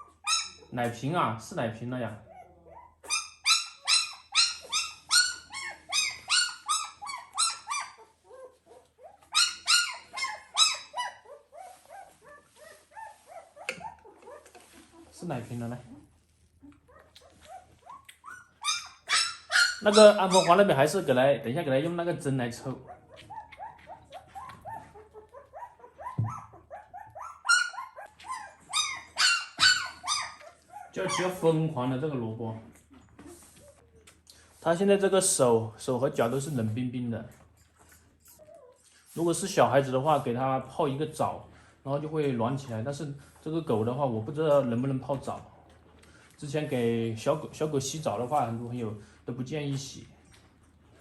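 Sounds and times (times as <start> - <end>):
puppy crying: 0.0 - 0.7, 2.2 - 15.2, 16.6 - 20.9, 22.8 - 31.5, 37.9 - 38.9.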